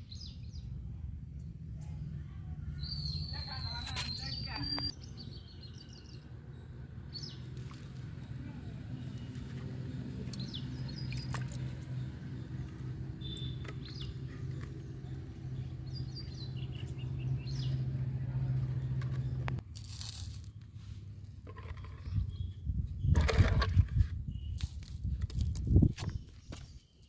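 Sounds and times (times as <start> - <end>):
steady low hum: 0.0 - 3.8
small birds chirping: 2.7 - 19.6, 21.6 - 23.2, 24.2 - 25.0.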